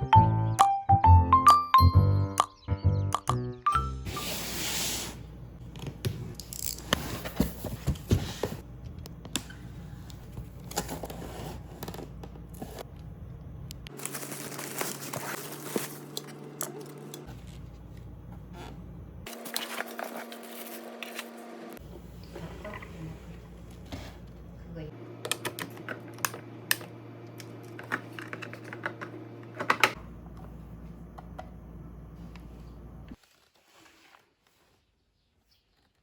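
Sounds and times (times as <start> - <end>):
close rustling and crinkling: 32.6 - 36.0.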